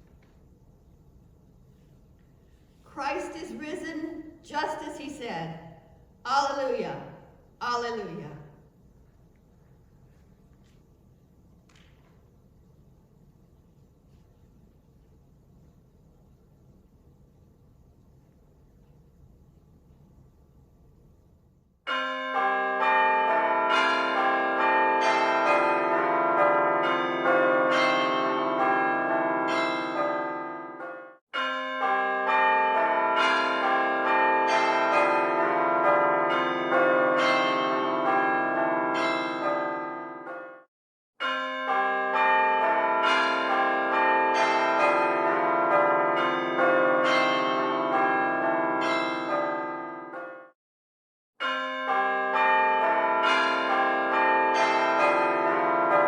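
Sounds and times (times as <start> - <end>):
church bells ringing: 21.9 - 50.6, 51.4 - 56.0.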